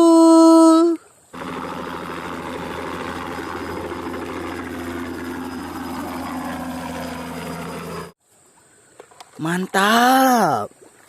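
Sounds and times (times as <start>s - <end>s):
helicopter engine and rotor drone: 1.4s - 8.2s
low hum: 1.4s - 8.2s.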